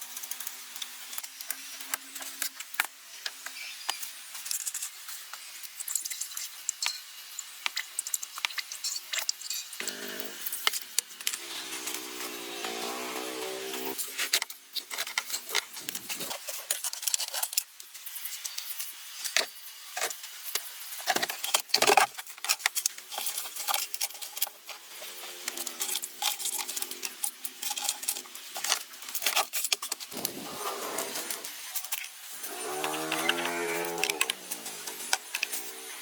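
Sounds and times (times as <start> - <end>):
hand tools clinking and scraping: 21.1 - 36.0.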